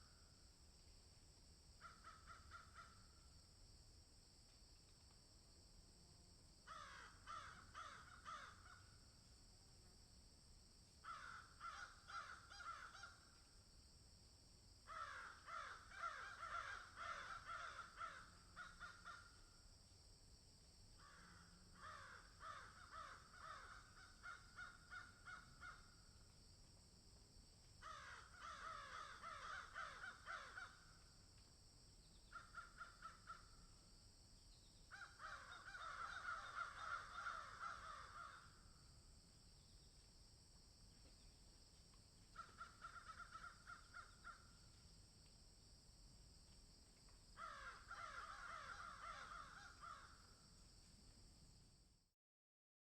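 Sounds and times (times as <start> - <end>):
faint steady hiss: 0.0 - 52.1
crows cawing: 1.8 - 3.2, 6.7 - 9.0, 11.0 - 13.3, 14.9 - 19.4, 21.0 - 26.0, 27.8 - 31.0, 32.3 - 33.5, 34.9 - 38.7, 42.3 - 44.5, 47.4 - 50.4.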